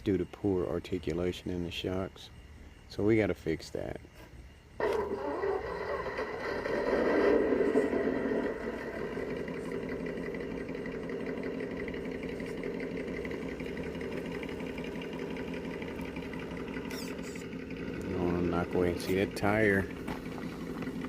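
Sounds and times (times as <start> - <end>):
toy car electric motor whining: 4.8 - 13.2, 16.0 - 17.6.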